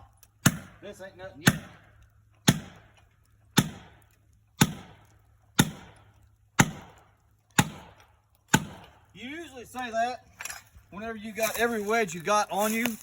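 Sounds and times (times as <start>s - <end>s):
hammer striking felling wedge: 0.4s - 0.8s, 1.4s - 2.9s, 3.5s - 6.0s, 6.6s - 7.0s, 7.6s - 9.0s.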